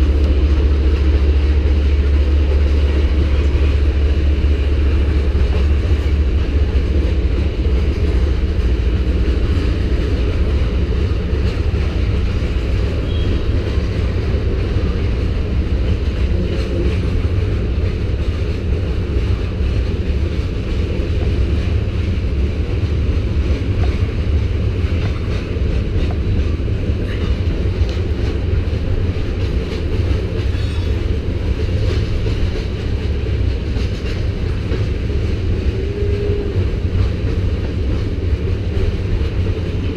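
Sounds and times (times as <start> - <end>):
freight train rumbling past: 0.0 - 39.9.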